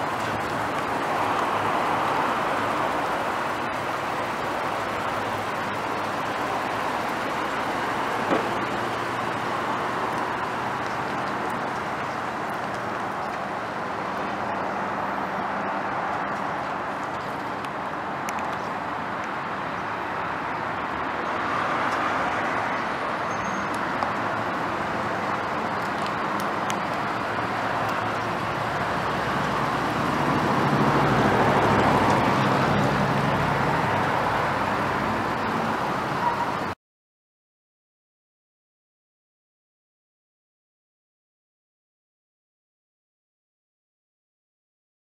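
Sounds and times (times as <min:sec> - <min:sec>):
road and tyre noise: 0:00.0 - 0:36.8
truck engine hum: 0:00.0 - 0:36.8.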